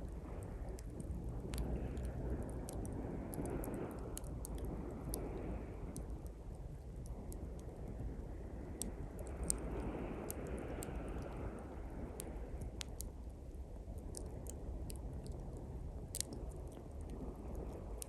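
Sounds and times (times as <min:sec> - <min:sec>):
sea waves: 0:00.0 - 0:06.2, 0:07.2 - 0:13.1
campfire crackling and popping: 0:00.0 - 0:18.0.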